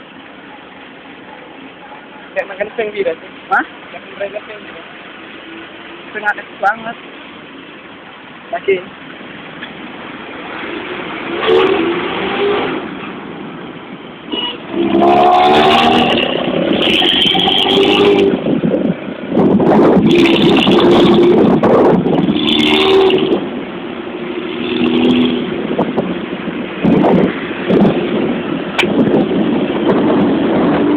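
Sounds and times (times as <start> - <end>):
engine and road noise: 0.0 - 30.9
bus horn multi-note tune: 14.3 - 18.3, 22.4 - 23.4.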